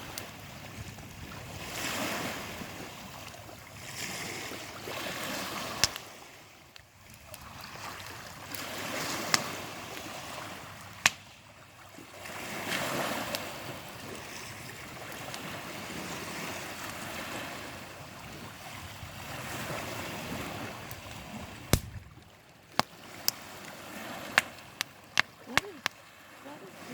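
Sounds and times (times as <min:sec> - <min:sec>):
small waves washing onto beach: 0:00.0 - 0:26.9
campfire popping: 0:04.6 - 0:11.5, 0:13.2 - 0:17.1, 0:19.8 - 0:26.1.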